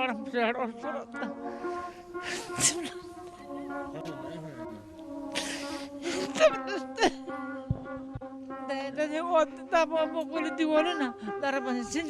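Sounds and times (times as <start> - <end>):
held drone tone: 0.8 - 12.0
soft low thumps: 6.2 - 10.0.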